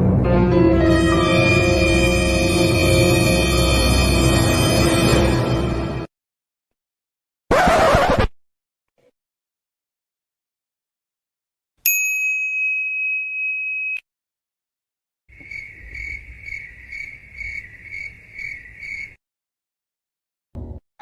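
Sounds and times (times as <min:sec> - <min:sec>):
electronic bell ding: 0:11.9 - 0:14.0.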